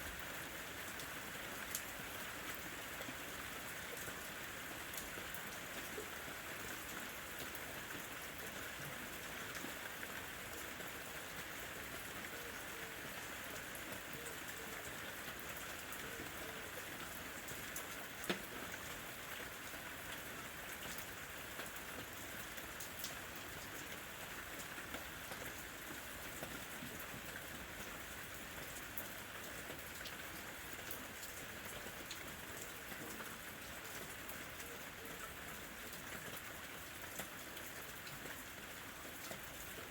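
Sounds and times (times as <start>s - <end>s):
steady rain hiss: 0.0s - 39.9s
rain drop ticks: 17.7s - 18.9s.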